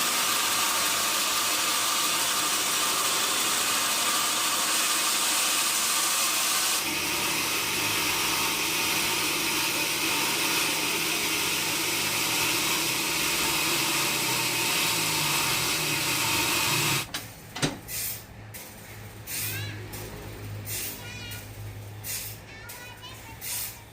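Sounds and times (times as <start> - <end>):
saw blade cutting log: 0.0 - 17.1.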